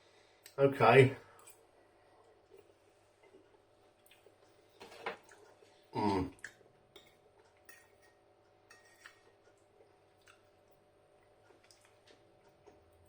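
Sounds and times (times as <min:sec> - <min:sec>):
low hum-like voice: 0:06.0 - 0:06.4
cutlery clicking on a plate: 0:07.0 - 0:09.2.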